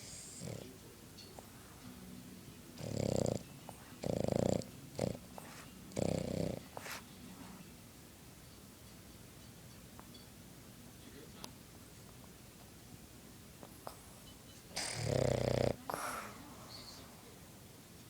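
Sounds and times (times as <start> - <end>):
dog snort: 0.0 - 0.8, 2.8 - 7.6, 13.8 - 16.9
dog snoring: 0.0 - 1.9, 2.7 - 7.6, 13.7 - 17.1.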